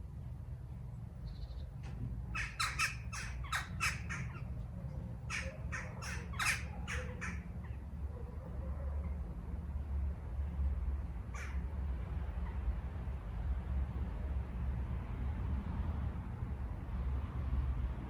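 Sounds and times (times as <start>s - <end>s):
crow cawing: 2.4s - 4.4s, 5.3s - 7.5s, 11.3s - 11.6s.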